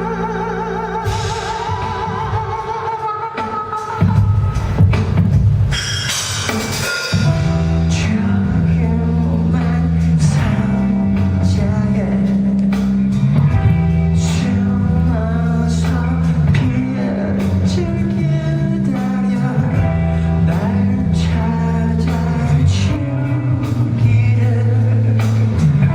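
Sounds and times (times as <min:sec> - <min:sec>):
person singing: 0:00.0 - 0:04.8, 0:07.3 - 0:25.9
live rock band playing: 0:00.0 - 0:25.9
cymbal crashes: 0:04.1 - 0:07.7.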